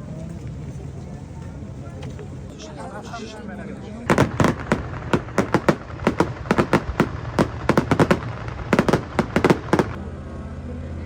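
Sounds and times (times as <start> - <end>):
fireworks bangs and cracks: 4.1 - 10.0.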